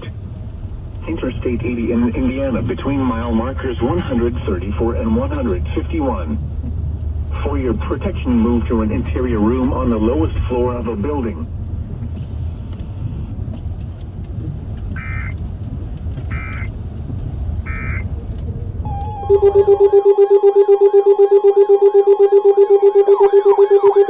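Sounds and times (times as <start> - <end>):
digital data bursts: 18.9 - 24.0
pulsing electronic alert tone: 18.9 - 24.0.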